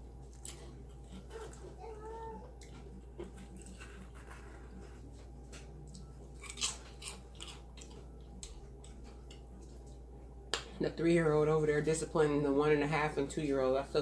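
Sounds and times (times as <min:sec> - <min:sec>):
person chewing and crunching food: 0:00.0 - 0:10.1.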